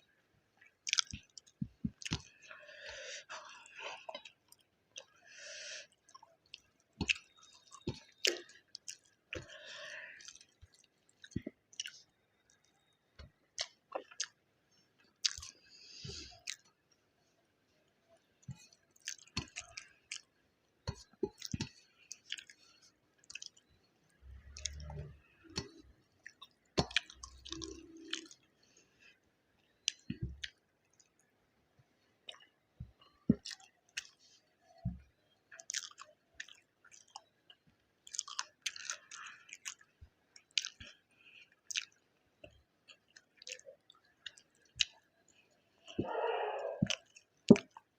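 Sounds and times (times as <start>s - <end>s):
close chewing with wet mouth clicks: 0.6s - 2.9s, 5.8s - 13.0s, 13.6s - 14.4s, 15.2s - 16.8s, 18.4s - 23.7s, 24.4s - 29.2s, 29.8s - 31.3s, 32.2s - 46.1s, 46.8s - 47.9s.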